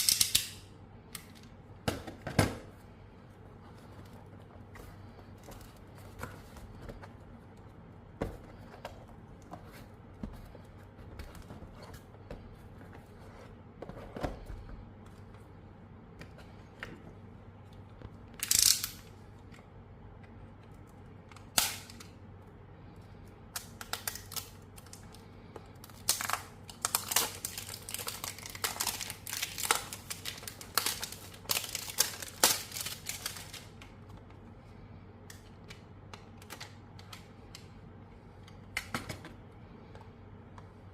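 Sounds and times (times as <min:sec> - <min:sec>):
packaging tearing: 0:25.9 - 0:33.7
packaging crinkling and scratching: 0:25.9 - 0:33.8.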